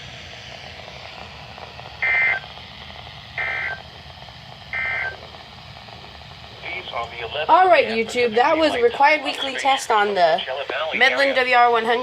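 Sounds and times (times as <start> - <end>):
radio hiss: 0.0 - 12.0
two-tone digital data bursts: 2.0 - 2.4, 3.4 - 3.8, 4.8 - 5.2.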